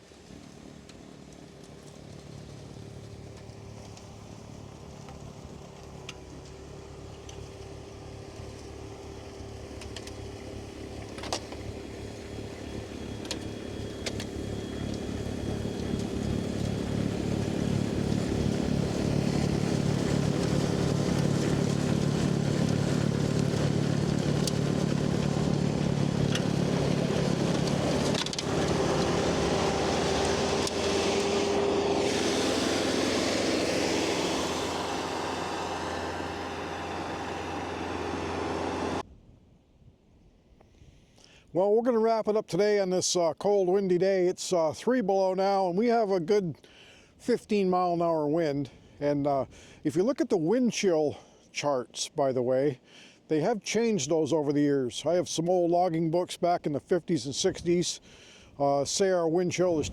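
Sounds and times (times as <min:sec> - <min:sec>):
tractor engine drone: 0:00.0 - 0:39.2, 0:51.9 - 0:59.9.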